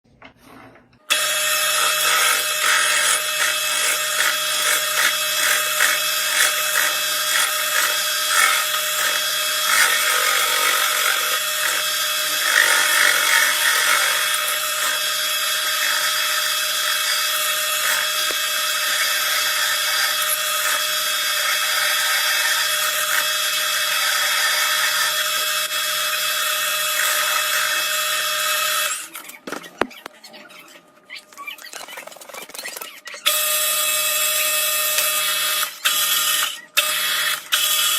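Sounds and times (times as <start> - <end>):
cutting tool scraping steel: 0.5 - 30.6
lathe machine hum: 1.1 - 25.6.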